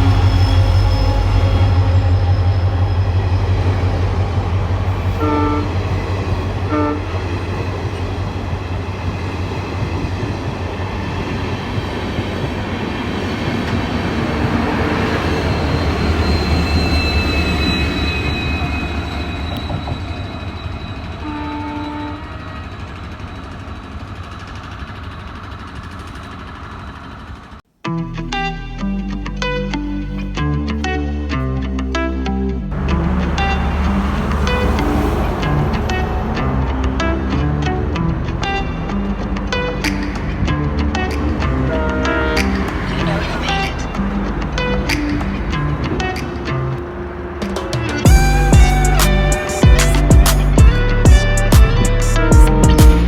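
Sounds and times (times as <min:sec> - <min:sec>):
multi-tone train horn: 0:00.0 - 0:08.4, 0:21.1 - 0:22.5, 0:32.7 - 0:38.0, 0:40.6 - 0:44.8, 0:45.4 - 0:50.0, 0:50.8 - 0:53.0
train rumbling on rails: 0:00.0 - 0:27.6, 0:32.7 - 0:53.0.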